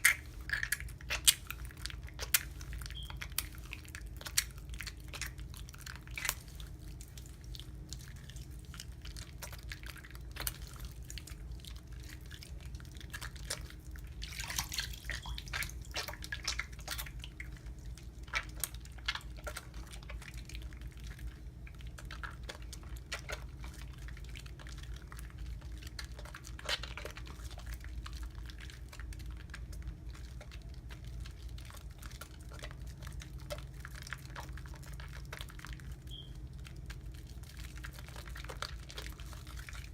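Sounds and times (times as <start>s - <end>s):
steady low hum: 0.0s - 39.9s
wet soap lathering: 0.0s - 39.9s.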